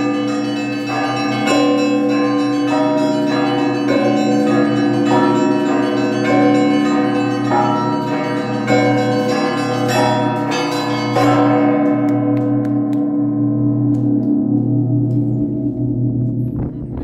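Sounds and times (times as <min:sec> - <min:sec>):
church bells ringing: 0:00.0 - 0:16.7
deep hum of large bell: 0:00.0 - 0:17.0.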